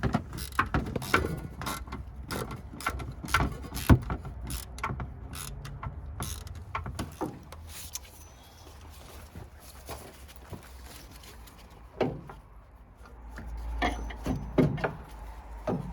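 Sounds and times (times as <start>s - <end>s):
hand tools clicking and knocking: 0.0s - 8.2s, 11.9s - 15.9s.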